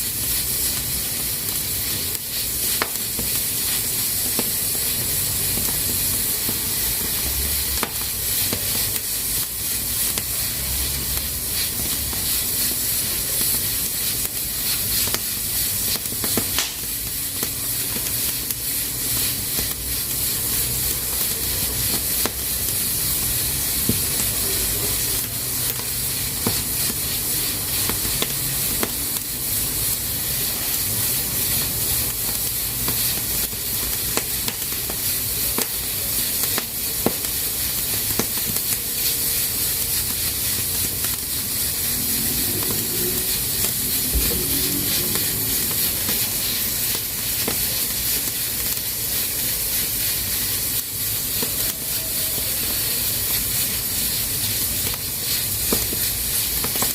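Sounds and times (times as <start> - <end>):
pressure cooker steam hissing: 0.0 - 56.9.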